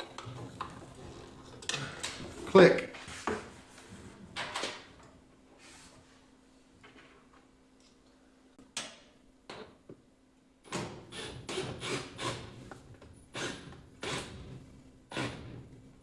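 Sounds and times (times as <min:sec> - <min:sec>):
clattering knocks and scrapes: 0:00.0 - 0:04.9.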